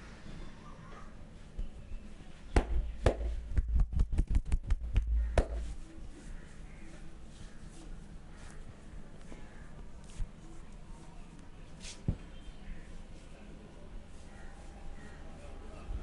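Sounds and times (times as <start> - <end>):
hands slapping a body: 2.5 - 5.8.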